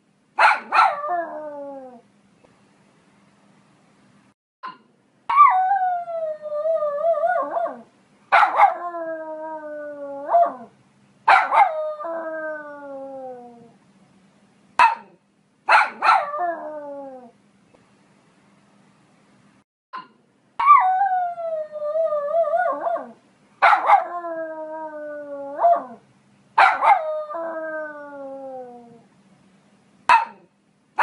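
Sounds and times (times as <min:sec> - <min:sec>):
dog barking: 0:00.4 - 0:01.0, 0:08.3 - 0:08.8, 0:11.3 - 0:11.8, 0:14.8 - 0:16.3, 0:23.6 - 0:24.1, 0:26.6 - 0:27.0, 0:30.1 - 0:30.5
dog yipping: 0:00.4 - 0:01.0, 0:05.3 - 0:05.6, 0:08.4 - 0:08.8, 0:11.3 - 0:11.8, 0:14.8 - 0:15.1, 0:15.7 - 0:16.4, 0:23.6 - 0:24.1, 0:30.1 - 0:30.4
dog howling: 0:23.8 - 0:26.0.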